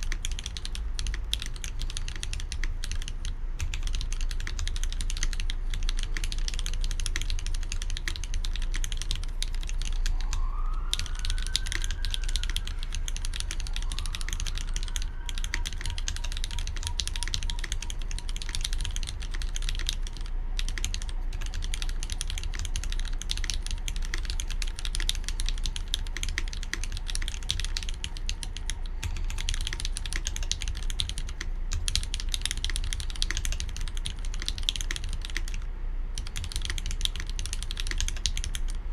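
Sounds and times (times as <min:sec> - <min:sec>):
mechanical keyboard typing: 0:00.0 - 0:38.8.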